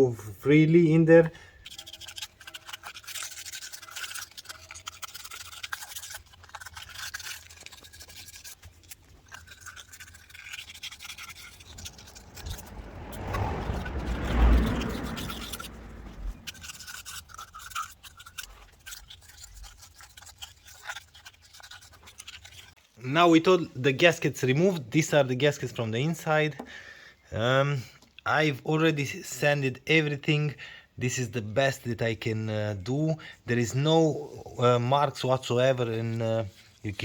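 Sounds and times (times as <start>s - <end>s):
sandpaper scratching metal: 1.7s - 13.4s, 14.0s - 22.8s
loud deep noise: 11.7s - 16.5s.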